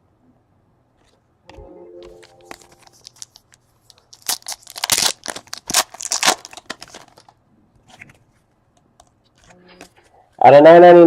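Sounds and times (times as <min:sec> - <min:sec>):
foil wrapper tearing and crinkling: 0:02.5 - 0:07.4.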